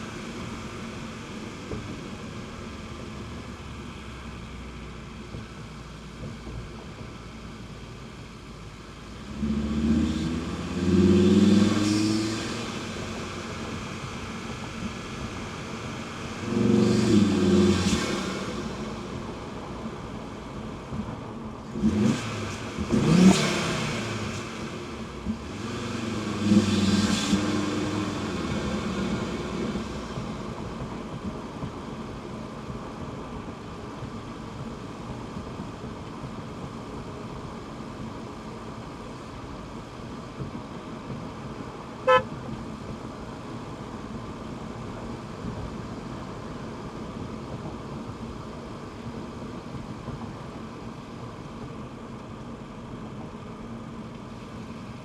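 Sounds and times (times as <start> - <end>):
road noise: 0.0 - 55.0
car engine accelerating: 9.0 - 20.7, 21.6 - 32.0, 33.5 - 52.4
short beep: 42.1 - 42.3.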